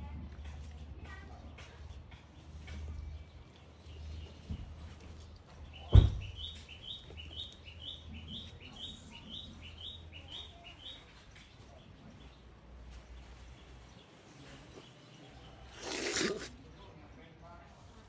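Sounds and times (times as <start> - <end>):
bird chirping: 5.5 - 16.5
animal sneezing: 15.7 - 16.6.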